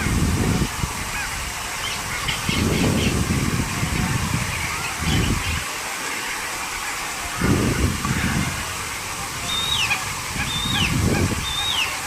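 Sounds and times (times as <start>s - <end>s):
wind rumble on microphone: 0.0s - 5.8s, 6.6s - 12.0s
steady hiss: 0.0s - 12.0s
bird calling: 9.4s - 12.0s.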